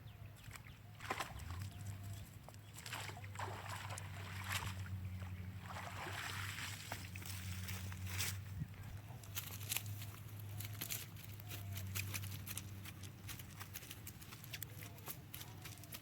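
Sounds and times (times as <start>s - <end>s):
water sloshing and splashing: 0.4s - 8.4s.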